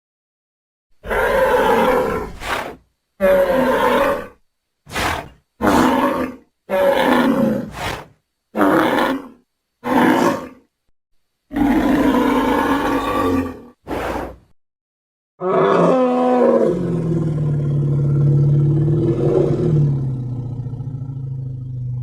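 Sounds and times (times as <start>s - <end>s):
deep growling dinosaur roars: 1.0s - 8.0s, 11.5s - 14.3s, 15.4s - 22.0s.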